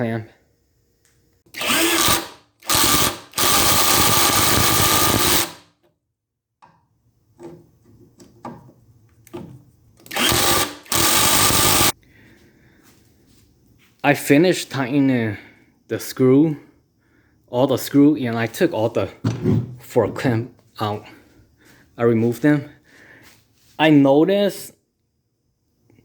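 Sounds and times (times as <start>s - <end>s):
drill clicks and knocks: 1.5s - 5.6s, 9.2s - 11.9s
power drill driving screws into wood: 1.5s - 5.7s, 10.0s - 12.0s.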